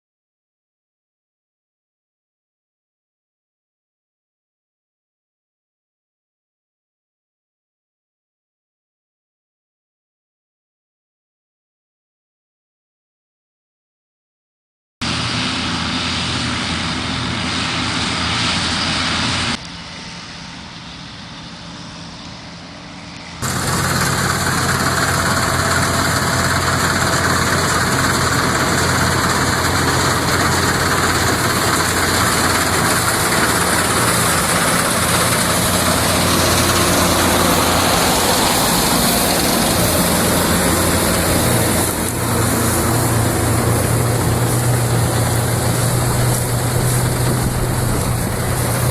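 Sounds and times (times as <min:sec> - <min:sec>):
combine harvester running: 0:15.0 - 0:48.9.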